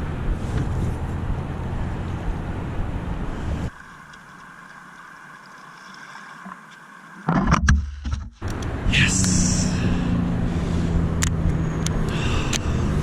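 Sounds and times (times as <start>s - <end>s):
rushing river water: 3.7s - 7.3s.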